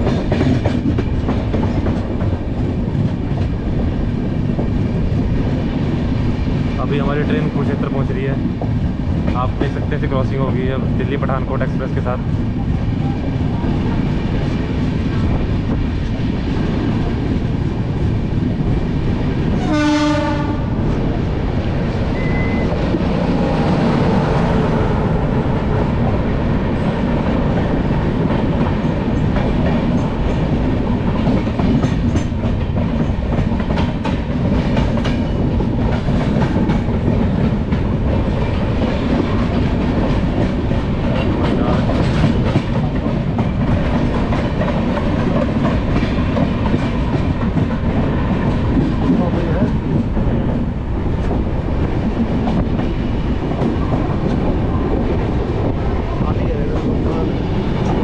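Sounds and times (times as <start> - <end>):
train wheels rumbling on rails: 0.0 - 58.0
train horn blast: 19.6 - 20.8.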